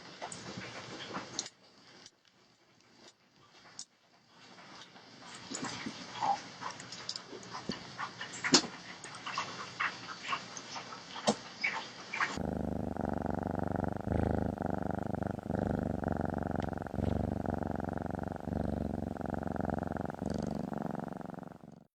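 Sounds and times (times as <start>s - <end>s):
cat purring: 12.3s - 22.0s.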